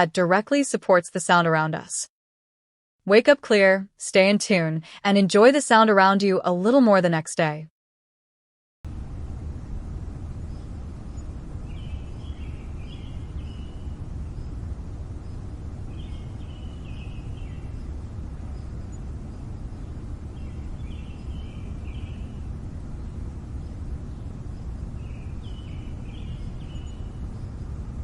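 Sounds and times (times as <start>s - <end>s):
low city rumble: 8.9s - 28.0s.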